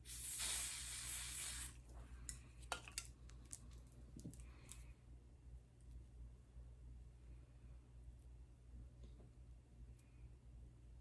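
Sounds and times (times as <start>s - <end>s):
spray can hissing: 0.0s - 1.8s.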